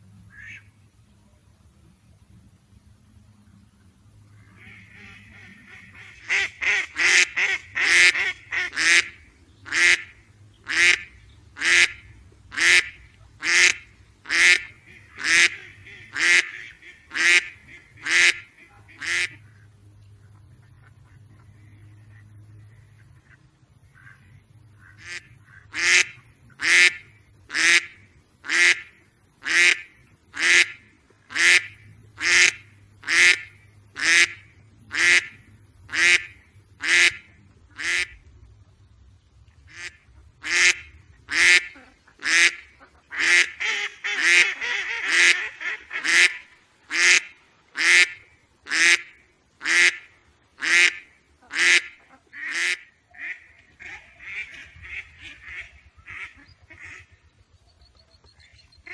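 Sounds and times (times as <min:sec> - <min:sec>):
duck quacking: 0:00.3 - 0:00.7, 0:04.4 - 0:38.2, 0:39.7 - 0:57.2, 0:58.5 - 0:58.9.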